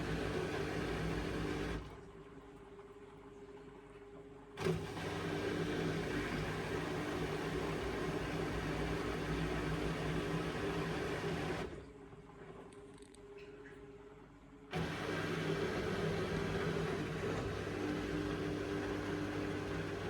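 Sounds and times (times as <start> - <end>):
washing machine whooshing run: 0.0 - 2.2, 4.6 - 12.0, 14.7 - 20.0
washing machine steady hum: 0.0 - 20.0.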